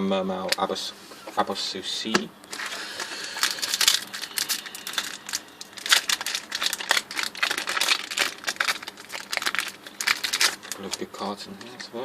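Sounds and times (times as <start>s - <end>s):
cards rustling: 2.5s - 11.9s
foil wrapper crinkling and tearing: 2.5s - 11.9s.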